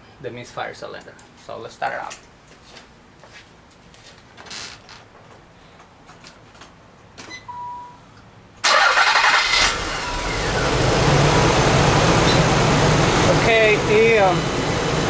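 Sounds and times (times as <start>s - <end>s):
short beep: 7.3s - 8.0s
car engine starting and idling: 8.6s - 15.0s.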